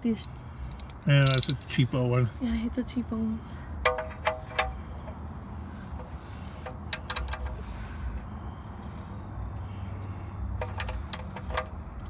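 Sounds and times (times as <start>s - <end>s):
ratchet wrench clicking: 0.7s - 1.8s, 6.0s - 7.8s, 10.6s - 11.7s.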